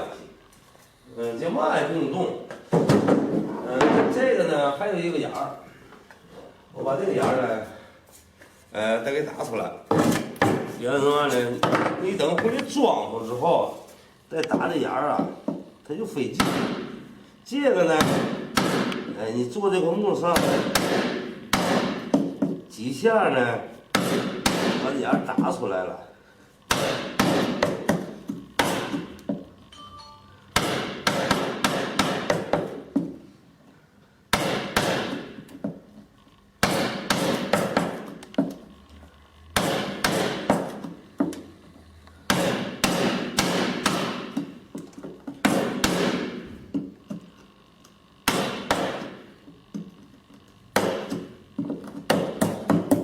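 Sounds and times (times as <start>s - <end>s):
hammer striking chisel: 16.4s - 16.9s, 17.9s - 19.1s, 20.3s - 22.6s, 23.9s - 25.5s, 26.7s - 33.1s, 34.3s - 35.4s, 36.6s - 38.5s, 39.6s - 41.4s, 42.3s - 44.5s, 45.4s - 46.9s, 48.2s - 49.2s, 50.7s - 51.4s, 52.0s - 53.0s.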